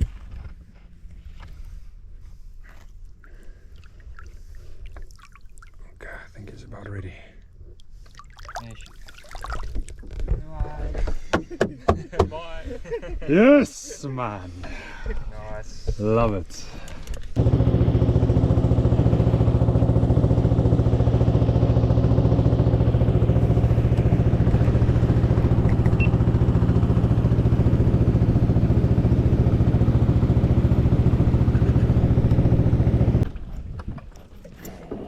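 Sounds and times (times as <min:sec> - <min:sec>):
boat engine running: 0:17.4 - 0:35.0.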